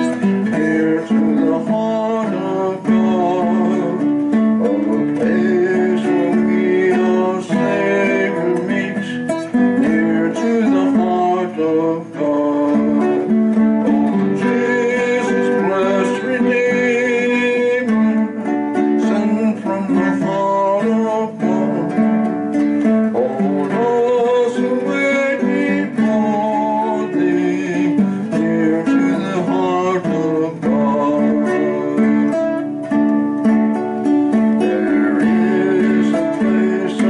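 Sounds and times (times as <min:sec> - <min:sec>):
acoustic guitar strummed and plucked: 0:00.0 - 0:37.0.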